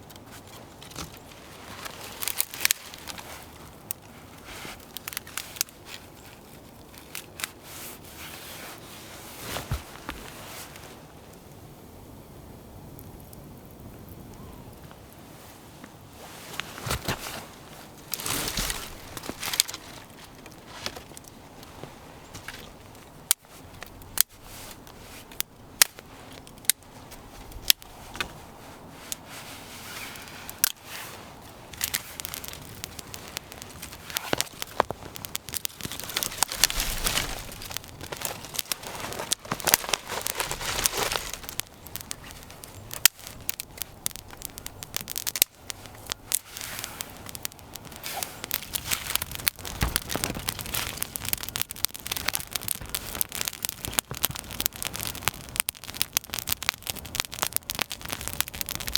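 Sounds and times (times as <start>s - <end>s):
campfire crackling: 0.0s - 58.9s
fire hissing: 0.2s - 58.9s
sharp pops: 31.7s - 58.9s.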